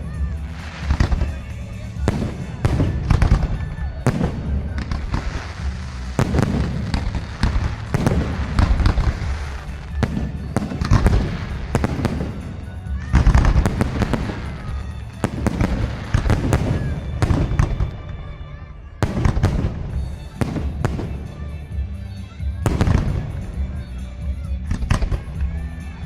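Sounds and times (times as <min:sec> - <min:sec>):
fireworks bangs: 0:00.0 - 0:26.0.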